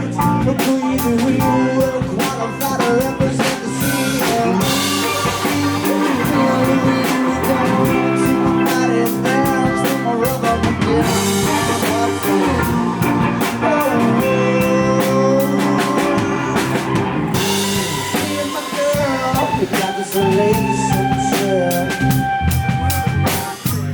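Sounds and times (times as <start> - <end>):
person singing: 0.0 - 23.7
drum kit beat: 0.0 - 23.9
guitar: 0.0 - 23.9
live rock band playing: 0.0 - 23.9.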